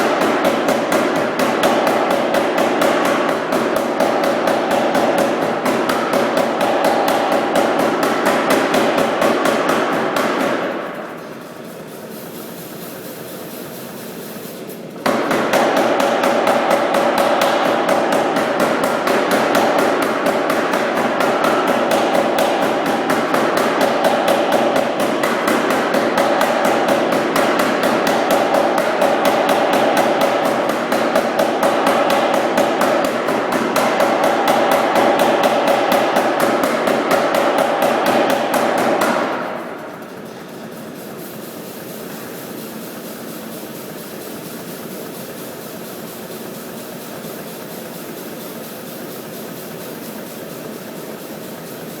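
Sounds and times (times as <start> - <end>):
power hammer striking hot steel: 0.0 - 11.4, 15.0 - 42.6
machine running steadily: 0.0 - 52.0.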